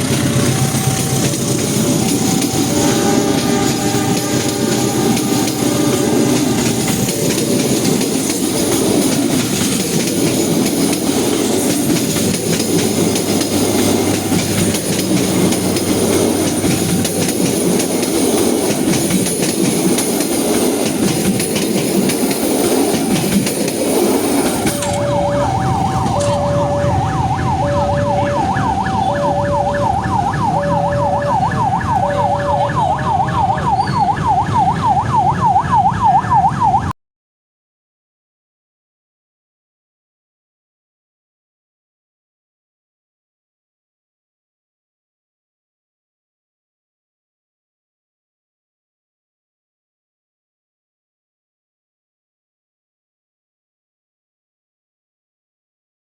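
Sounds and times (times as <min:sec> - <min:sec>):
train wheels clattering: 0:00.0 - 0:33.8
two-tone electronic warning alarm: 0:00.4 - 0:07.0, 0:24.6 - 0:36.9.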